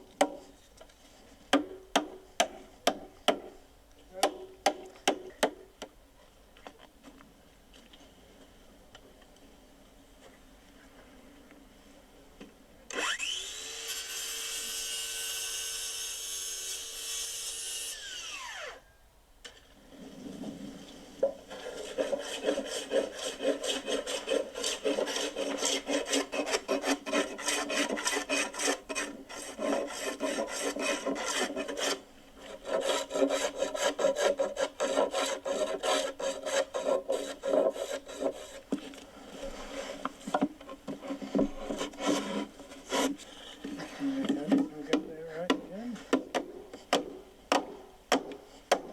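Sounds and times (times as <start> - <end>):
power tool motor running: 12.9 - 14.1, 17.9 - 18.8
hand saw cutting wood: 12.9 - 18.8, 21.5 - 38.9, 40.9 - 48.9.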